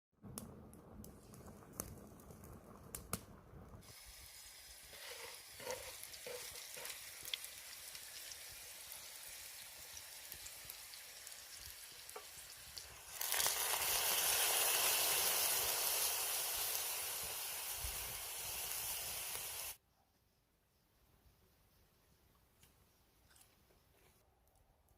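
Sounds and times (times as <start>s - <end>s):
food frying and sizzling: 0.3s - 19.8s.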